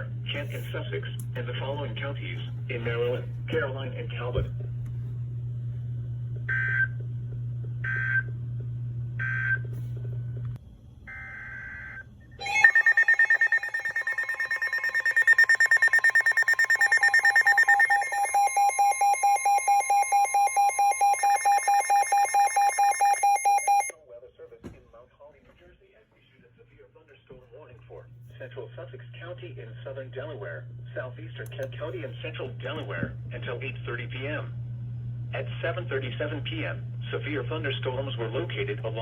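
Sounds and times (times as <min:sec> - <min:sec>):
pulsing electronic alert tone: 0:12.4 - 0:23.9
shrill digital data bursts: 0:12.5 - 0:23.9.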